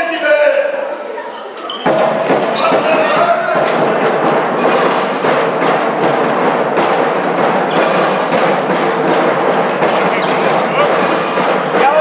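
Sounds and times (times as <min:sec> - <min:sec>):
crowd noise: 0:00.0 - 0:12.0
high squeak: 0:01.2 - 0:02.9
sharp knocks and thuds: 0:01.8 - 0:12.0.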